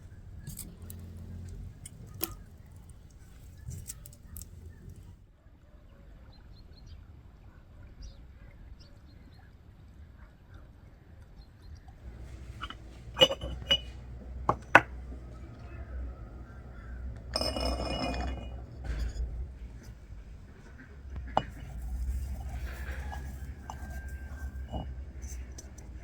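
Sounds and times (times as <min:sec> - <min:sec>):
glassware clinking: 0:12.5 - 0:14.9, 0:17.3 - 0:19.2, 0:21.3 - 0:25.4
glassware rattling clatter: 0:12.5 - 0:14.9, 0:17.3 - 0:19.2, 0:21.3 - 0:25.7.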